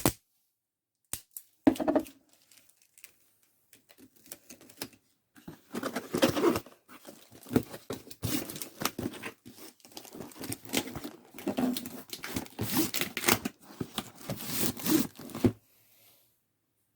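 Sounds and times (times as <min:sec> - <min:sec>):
packaging crinkling and rustling: 0:02.0 - 0:15.6
packaging tearing: 0:06.1 - 0:15.5.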